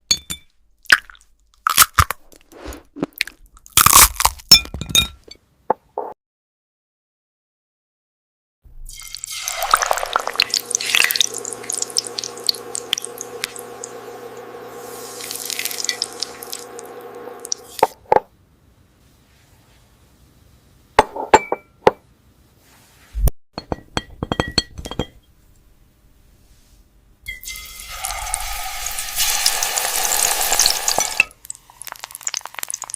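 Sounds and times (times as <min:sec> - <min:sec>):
glass clinking and tinkling: 0:00.1 - 0:00.5, 0:04.5 - 0:05.4, 0:21.3 - 0:21.8, 0:23.6 - 0:25.3, 0:27.3 - 0:27.7.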